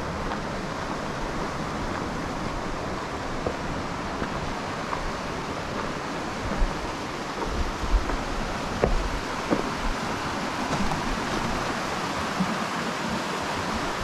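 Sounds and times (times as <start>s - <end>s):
waterfall roar: 0.0s - 14.0s.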